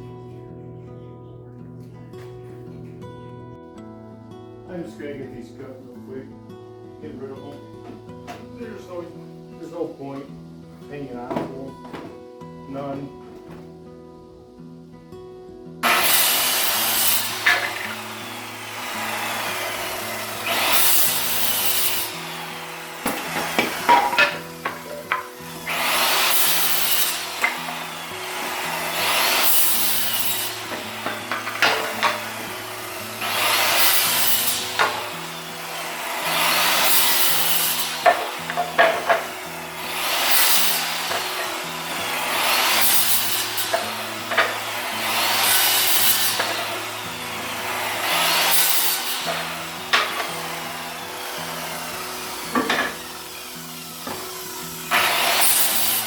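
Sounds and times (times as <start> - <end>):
background music with low notes: 0.0 - 56.0
saw rasping through wood: 15.8 - 56.0.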